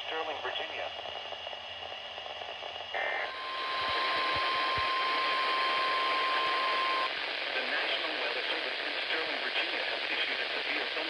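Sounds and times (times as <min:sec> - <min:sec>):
digital data tones: 0:03.0 - 0:07.1
static hiss: 0:03.0 - 0:11.0.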